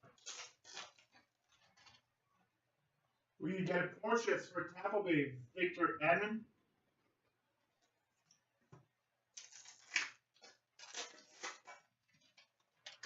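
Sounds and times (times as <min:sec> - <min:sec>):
wrapper crinkling and rustling: 0:00.0 - 0:02.1, 0:09.4 - 0:13.0.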